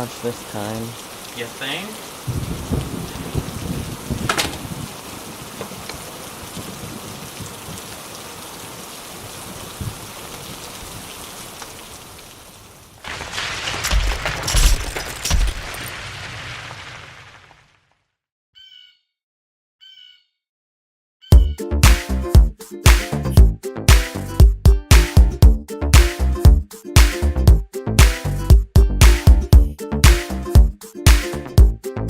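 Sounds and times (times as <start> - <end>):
heavy rain: 0.0 - 17.7
thunder crack: 2.3 - 5.0
deep rumbling thunderclaps: 2.3 - 5.4.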